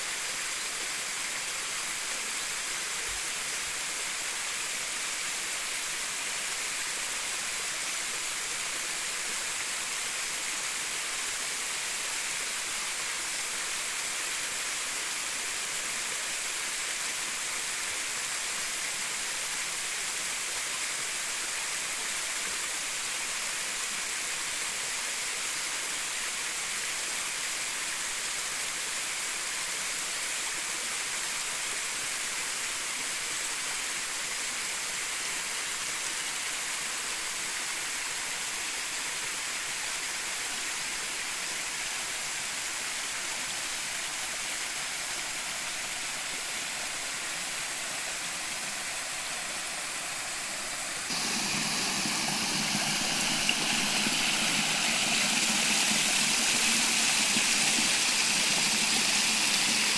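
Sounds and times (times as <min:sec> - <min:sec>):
waterfall rushing: 0:43.0 - 0:59.9.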